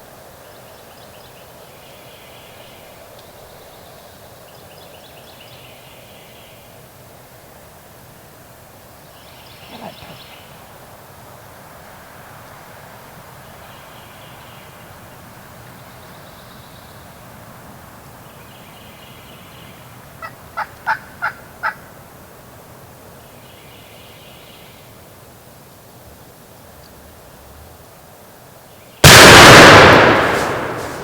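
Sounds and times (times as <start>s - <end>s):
turkey calling: 20.2s - 21.9s
wind rushing: 29.0s - 31.0s.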